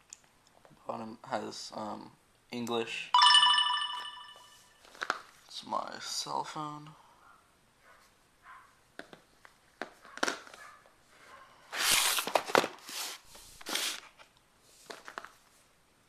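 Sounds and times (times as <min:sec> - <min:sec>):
rustling and scraping: 0:11.8 - 0:15.7.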